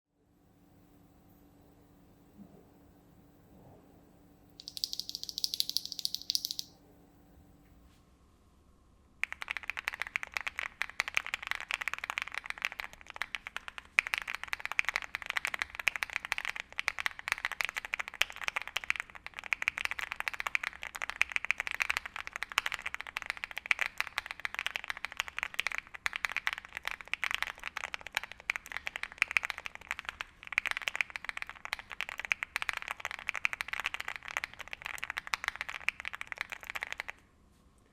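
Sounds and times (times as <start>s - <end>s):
mechanical keyboard typing: 4.6s - 6.7s, 9.2s - 37.2s.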